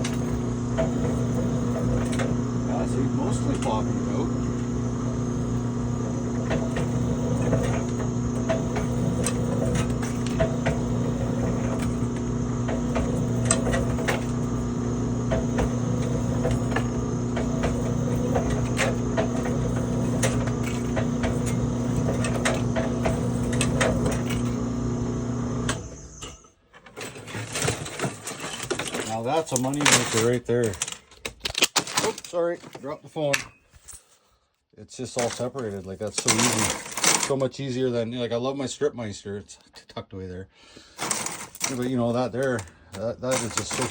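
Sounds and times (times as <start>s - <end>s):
wire stripping machine motor hum: 0.0s - 30.4s, 41.0s - 43.9s.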